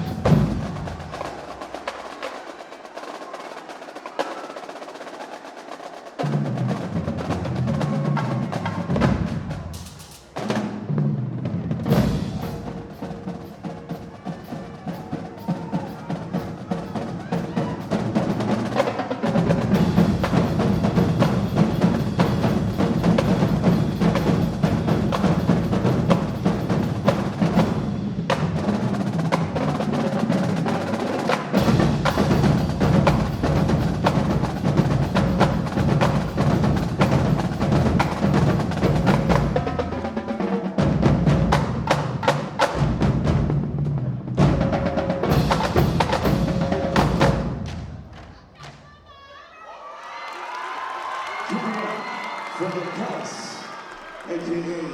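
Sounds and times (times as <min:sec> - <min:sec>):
snare and tenor drums: 0:00.0 - 0:49.0
bass drums: 0:19.4 - 0:29.2, 0:31.6 - 0:39.8, 0:40.9 - 0:48.2.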